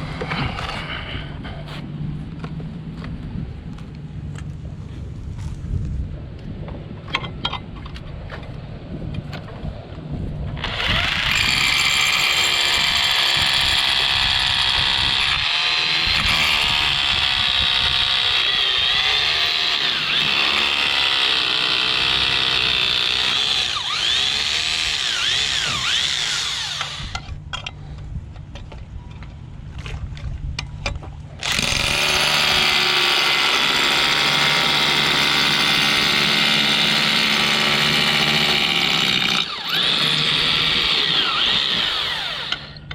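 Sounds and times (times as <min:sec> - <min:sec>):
power drill whining under load: 0:10.6 - 0:27.3, 0:31.4 - 0:42.9.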